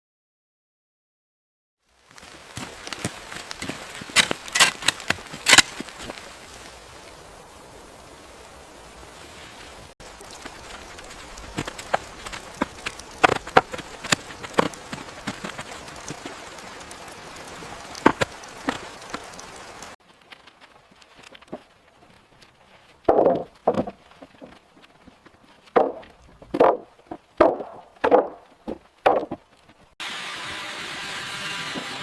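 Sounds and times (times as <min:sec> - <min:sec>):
chopping wood: 0:02.6 - 0:05.9, 0:11.5 - 0:16.3, 0:17.9 - 0:19.2, 0:23.1 - 0:24.0, 0:25.7 - 0:29.4.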